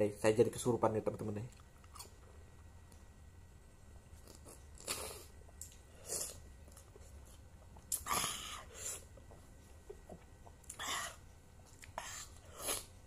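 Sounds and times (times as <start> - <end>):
person sucking and breathing: 7.9 - 9.1, 11.8 - 13.0.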